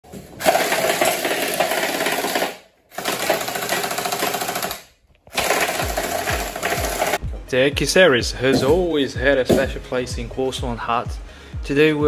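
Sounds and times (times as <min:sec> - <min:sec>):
gel blaster full-auto firing: 0:00.4 - 0:07.2.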